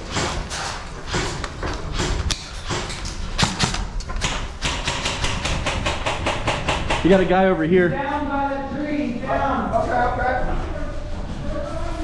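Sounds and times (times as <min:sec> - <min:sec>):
thumps and sharp knocks: 0:00.0 - 0:07.2.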